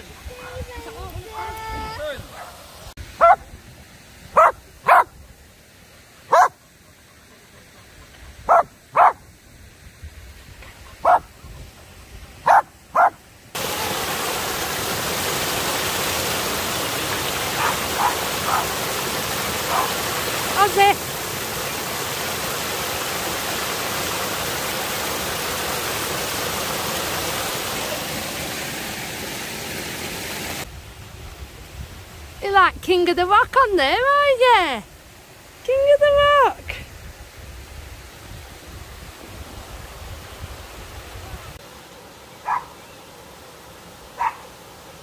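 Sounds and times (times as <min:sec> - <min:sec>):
waterfall rushing: 0:00.0 - 0:45.0
dog barking: 0:03.2 - 0:03.4, 0:04.3 - 0:05.1, 0:06.3 - 0:06.6, 0:08.5 - 0:09.2, 0:11.0 - 0:11.3, 0:12.4 - 0:13.2, 0:17.6 - 0:18.7, 0:19.7 - 0:20.0, 0:42.4 - 0:42.8, 0:44.2 - 0:44.4.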